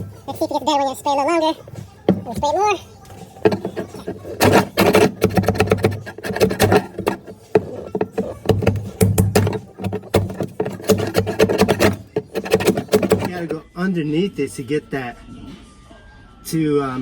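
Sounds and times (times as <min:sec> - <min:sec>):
metal tool scraping tar off metal: 0:01.6 - 0:13.6.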